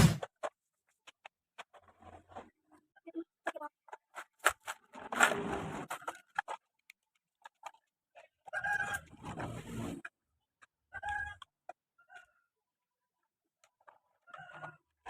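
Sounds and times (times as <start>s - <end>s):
plastic toy vehicles in sand: 0.0s - 15.0s
chicken clucking: 8.2s - 9.3s, 10.6s - 12.5s.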